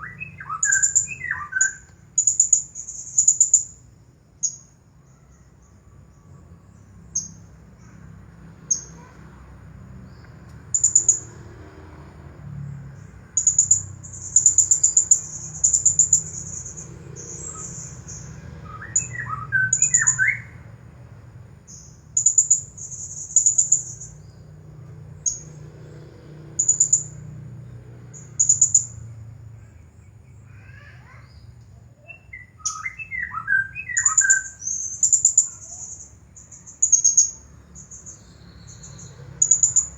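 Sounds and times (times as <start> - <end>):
parrot high trilled calls: 0.0 - 2.6, 18.6 - 20.6, 32.2 - 36.1.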